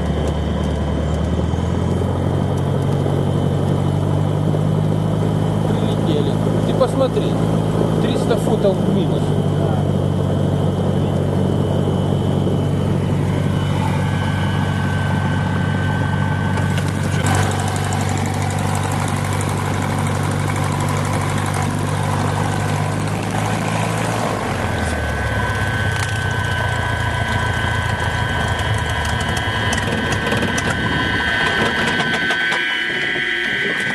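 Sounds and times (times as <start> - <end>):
light aircraft engine and propeller: 0.0 - 33.9
thin high whistle: 25.0 - 33.9.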